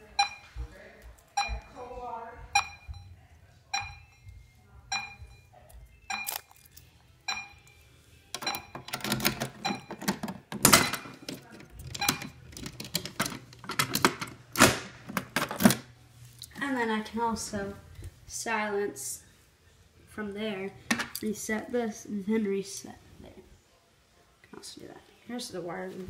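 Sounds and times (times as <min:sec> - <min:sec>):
fire alarm chime dinging: 0:01.4 - 0:05.5
clicking and rattling: 0:08.4 - 0:15.8.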